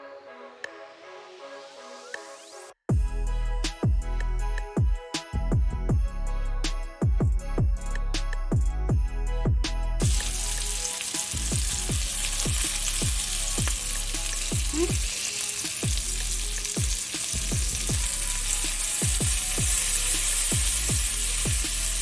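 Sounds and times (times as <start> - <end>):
background music beat: 0.0 - 22.0
chicken sizzling in a skillet: 10.0 - 22.0.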